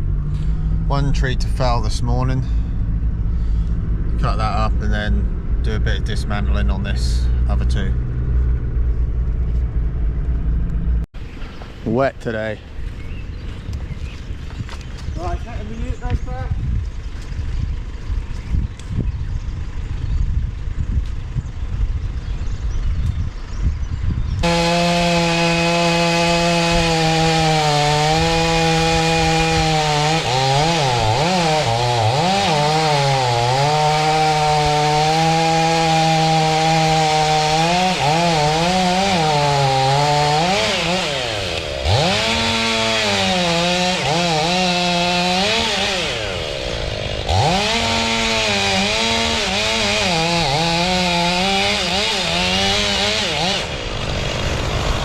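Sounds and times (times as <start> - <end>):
chainsaw cutting: 24.4 - 55.0.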